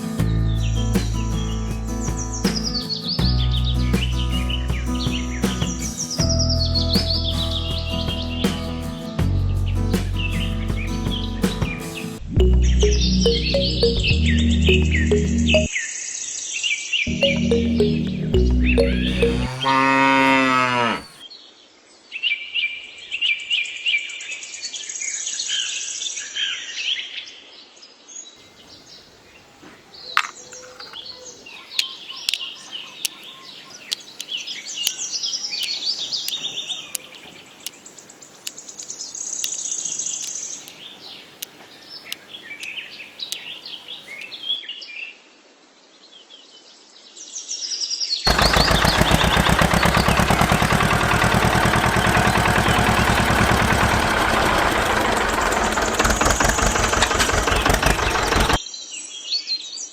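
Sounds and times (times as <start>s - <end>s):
songbirds chirping and trilling: 0.0s - 45.1s, 45.9s - 59.9s
fast mechanical rattle: 48.3s - 58.6s.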